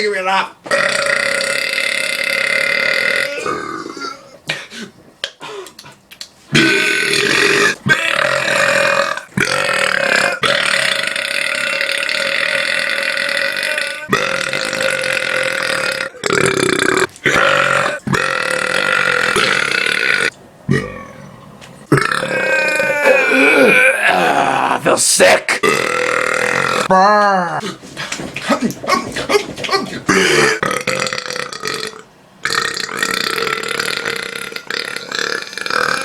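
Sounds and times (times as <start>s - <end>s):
person belching loudly: 0.7s - 4.4s, 6.5s - 21.2s, 21.9s - 24.8s, 25.5s - 27.6s, 29.7s - 36.0s.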